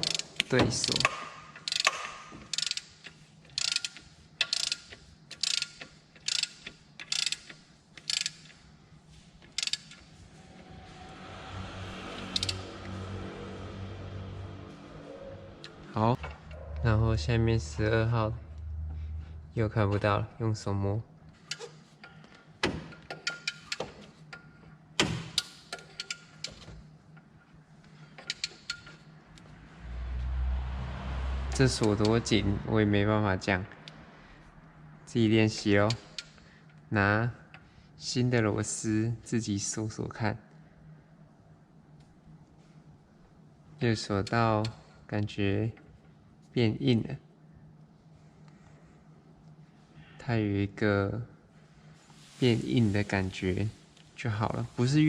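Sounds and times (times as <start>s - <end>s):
ratchet wrench clicking: 0.0s - 8.6s, 9.5s - 10.0s, 12.3s - 12.6s.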